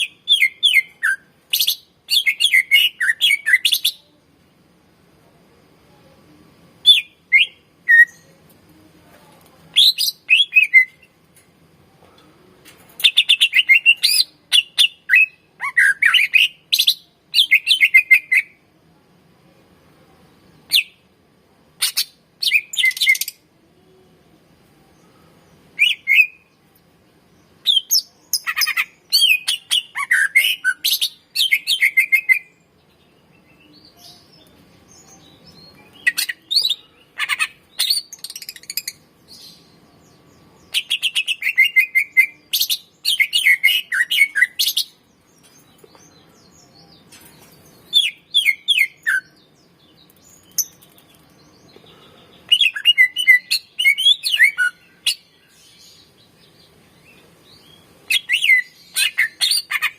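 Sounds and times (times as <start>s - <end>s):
bird chirping and whistling: 27.7s - 32.5s, 41.0s - 42.4s, 48.0s - 49.3s, 52.5s - 55.2s, 58.1s - 59.9s.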